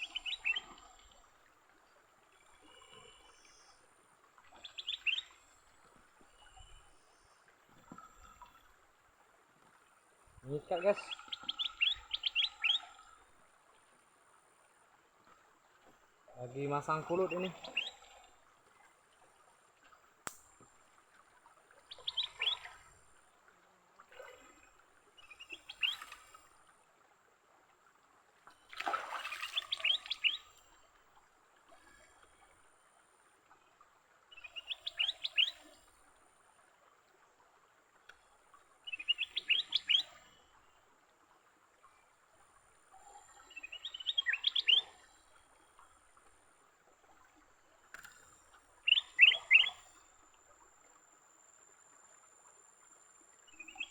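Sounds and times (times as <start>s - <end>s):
bird calling: 10.5s - 12.9s, 17.0s - 18.0s, 21.9s - 22.7s, 29.4s - 30.4s, 34.4s - 35.7s, 38.9s - 40.2s, 43.5s - 45.0s, 48.8s - 49.8s.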